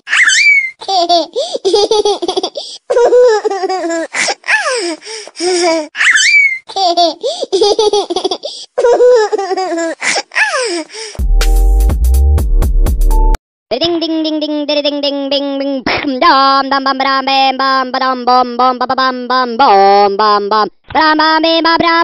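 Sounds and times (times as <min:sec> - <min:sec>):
baby laughing: 0:00.0 - 0:11.2
electronic beat: 0:11.2 - 0:13.4.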